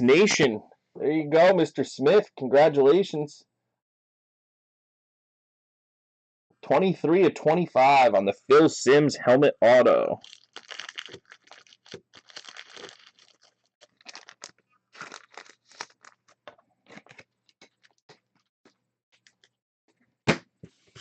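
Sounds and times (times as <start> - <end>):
wrappers tearing and crinkling: 10.2 - 18.0.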